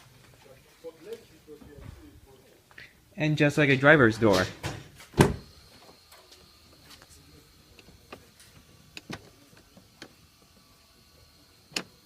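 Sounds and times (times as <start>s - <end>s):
car door thump: 4.6s - 5.5s.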